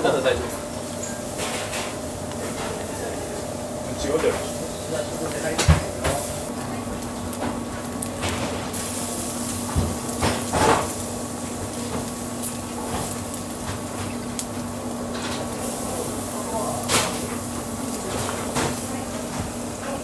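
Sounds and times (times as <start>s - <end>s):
steady hum and hiss: 0.0s - 20.0s
utensils knocking and clattering: 0.2s - 6.5s.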